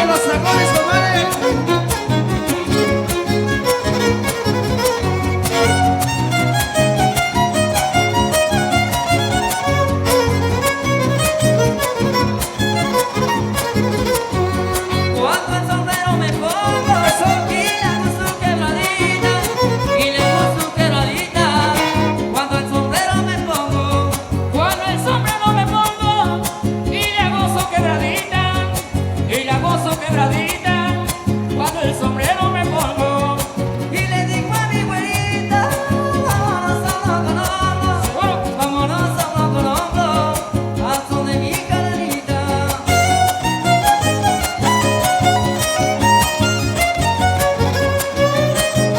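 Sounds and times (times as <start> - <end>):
violin melody with slides: 0.0 - 22.7, 42.8 - 48.9
rapid strummed guitars: 0.0 - 48.9.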